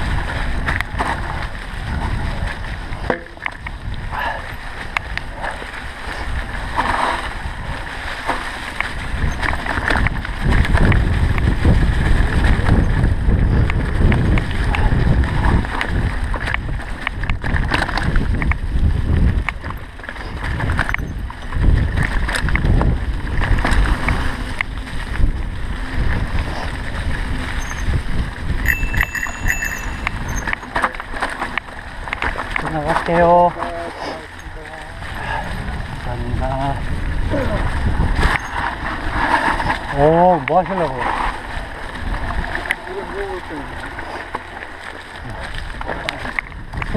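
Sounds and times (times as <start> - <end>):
bike tyres rumbling: 0.0 - 46.9
wind on microphone: 0.0 - 46.9
bike clattering over rocks: 13.7 - 25.2
high ringing tone: 27.6 - 27.9, 28.6 - 30.8.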